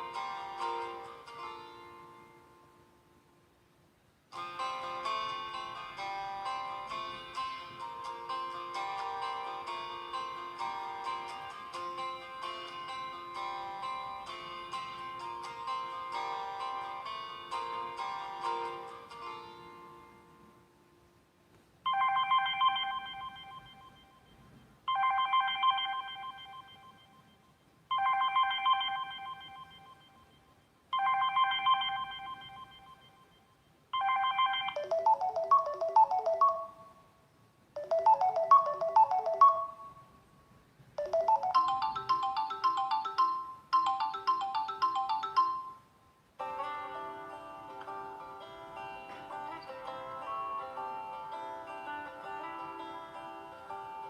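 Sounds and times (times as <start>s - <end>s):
bell-like ringtone chime: 21.9s - 37.0s, 37.8s - 40.2s, 41.0s - 45.9s
phone ringtone: 21.9s - 37.0s, 37.8s - 40.2s, 41.0s - 45.9s
plinking ringtone melody: 21.9s - 37.0s, 37.8s - 40.2s, 41.0s - 45.9s.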